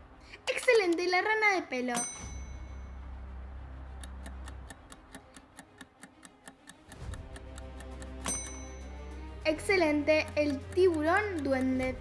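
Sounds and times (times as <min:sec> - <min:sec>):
low music bed: 0:01.9 - 0:12.0
bright chime-like hit: 0:02.0 - 0:03.1, 0:08.2 - 0:09.0
clock ticking: 0:02.0 - 0:12.0.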